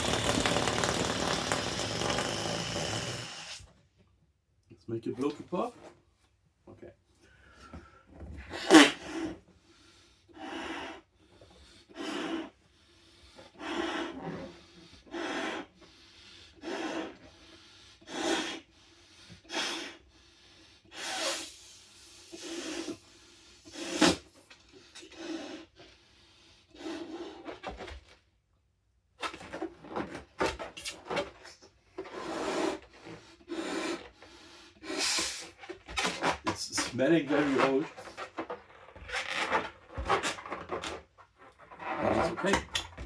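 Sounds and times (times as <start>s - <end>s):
rubber rubbing and squeaking: 0.0s - 3.7s, 34.8s - 43.0s
breath blowing into balloon: 0.0s - 3.8s, 8.5s - 11.1s, 11.7s - 27.7s, 32.1s - 35.7s.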